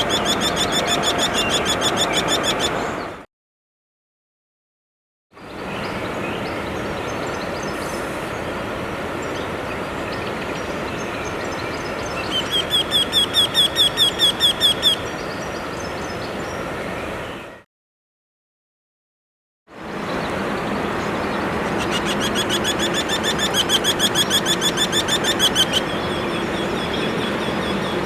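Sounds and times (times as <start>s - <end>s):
bird singing repeated rising notes: 0.0s - 3.2s.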